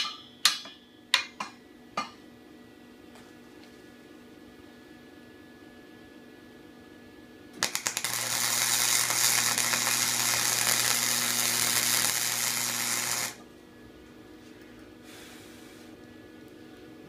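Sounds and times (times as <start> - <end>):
arc striking pops: 7.6 - 13.4
welding arc crackling hiss: 7.6 - 13.4.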